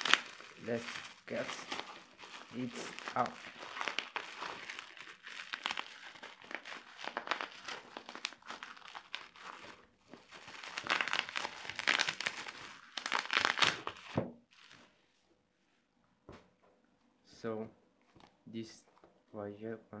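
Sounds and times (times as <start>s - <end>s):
packaging crinkled and torn open: 0.0s - 14.8s.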